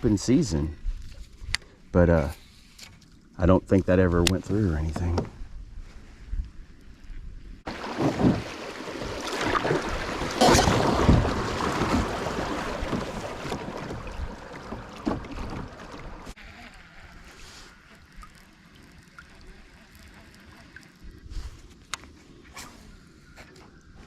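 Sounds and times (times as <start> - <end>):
water rushing around a kayak: 7.6 - 21.9
wind on microphone: 9.5 - 16.4.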